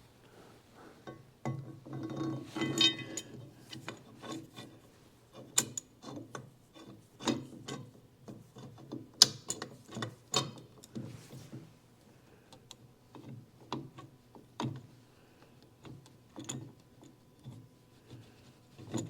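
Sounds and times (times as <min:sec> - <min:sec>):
steel parts clicking and clinking: 0:02.0 - 0:03.4.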